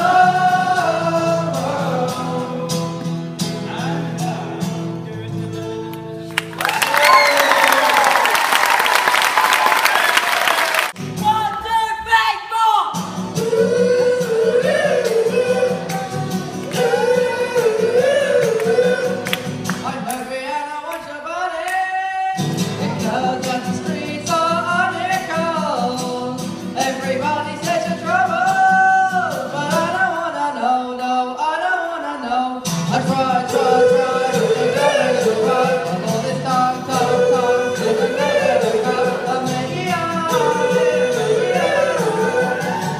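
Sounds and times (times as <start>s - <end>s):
group of voices singing: 0.0s - 3.0s, 13.1s - 42.9s
applause: 6.3s - 11.0s, 19.2s - 20.2s
band instrumental backing: 12.9s - 20.2s, 32.7s - 42.9s.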